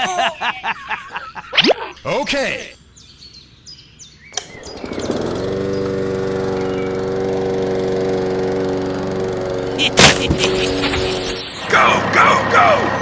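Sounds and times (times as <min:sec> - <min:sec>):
engine starting and running: 0:04.3 - 0:13.0.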